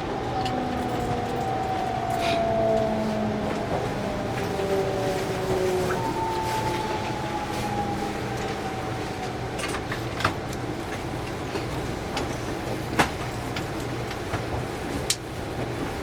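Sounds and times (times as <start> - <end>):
faint tone sliding down: 0.0 - 9.9
train running gear rumble: 0.0 - 16.0.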